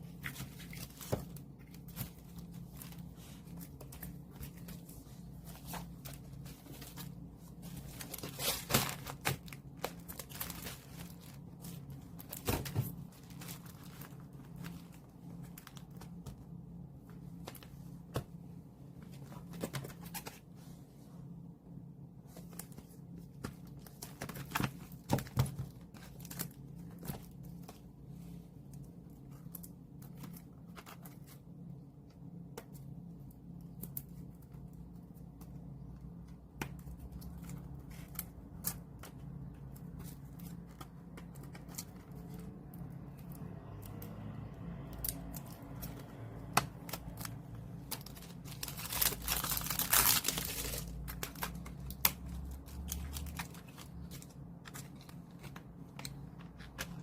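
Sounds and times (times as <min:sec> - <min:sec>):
packaging tearing and crinkling: 0:07.7 - 0:16.0, 0:45.0 - 0:57.0.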